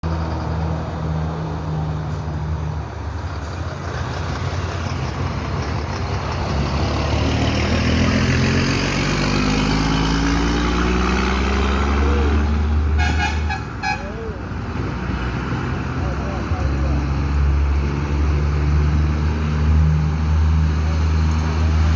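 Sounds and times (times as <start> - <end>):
truck diesel engine growling: 0.0 - 21.9
truck horn toot: 13.0 - 14.3.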